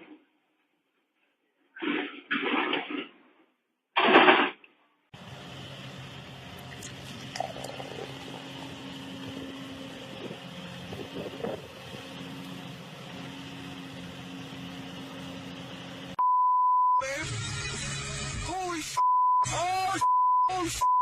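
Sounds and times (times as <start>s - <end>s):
machine engine humming: 5.2s - 16.2s
high beep tone: 16.2s - 17.0s.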